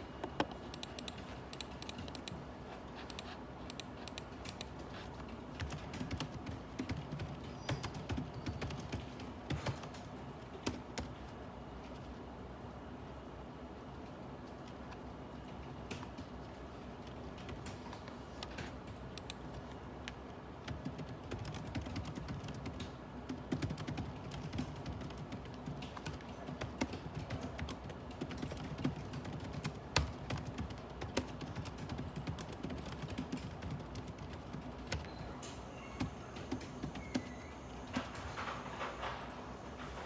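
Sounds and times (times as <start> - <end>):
computer keyboard typing: 0.3 - 11.2, 17.3 - 19.8, 20.6 - 39.1.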